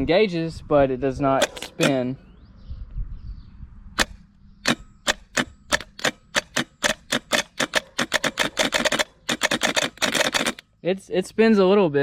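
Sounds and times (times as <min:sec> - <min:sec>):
starter motor barely spinning: 0:04.0 - 0:10.6
starter solenoid clicking: 0:04.0 - 0:10.6.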